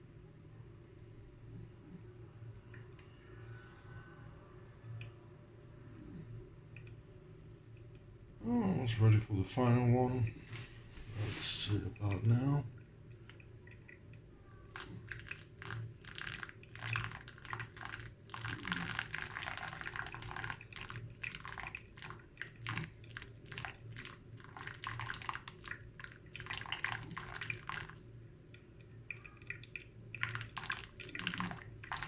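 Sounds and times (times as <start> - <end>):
hot water pouring onto coffee: 8.6 - 32.0.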